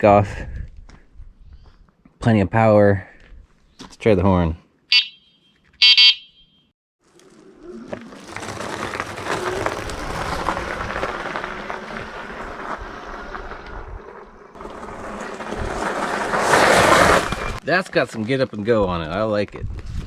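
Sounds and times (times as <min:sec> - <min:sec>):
bike tyre noise: 0:07.0 - 0:20.0
wind rushing over microphone: 0:19.5 - 0:20.0.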